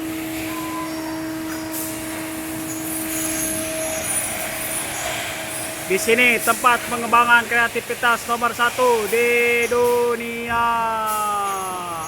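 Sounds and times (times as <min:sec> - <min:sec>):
factory machinery hum: 0:00.0 - 0:12.0
even hiss: 0:04.8 - 0:12.0.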